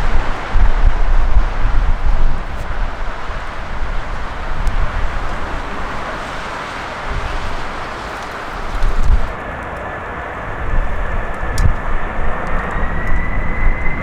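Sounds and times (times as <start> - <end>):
jet engines roaring: 0.0 - 14.0
wind buffeting microphone: 0.0 - 14.0.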